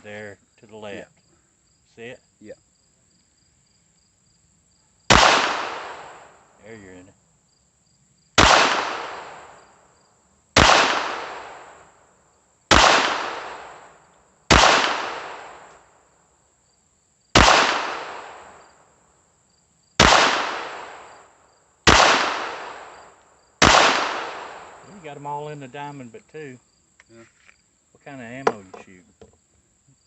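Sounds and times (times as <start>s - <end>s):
pistol shots echoing: 5.1s - 6.4s, 8.4s - 9.8s, 10.6s - 11.9s, 12.7s - 15.8s, 17.4s - 18.6s, 20.0s - 21.2s, 21.8s - 25.1s.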